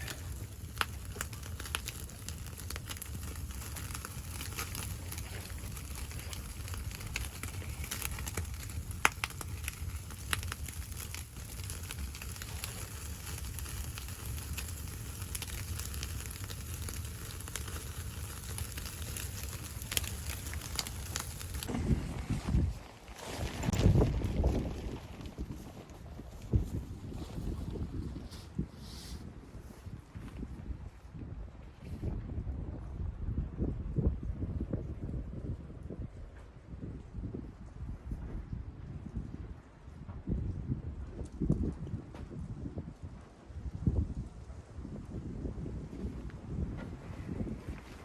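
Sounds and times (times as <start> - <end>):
wood fire crackling: 0.0 - 28.0, 46.8 - 48.0
fire popping: 0.0 - 28.5, 37.3 - 48.0.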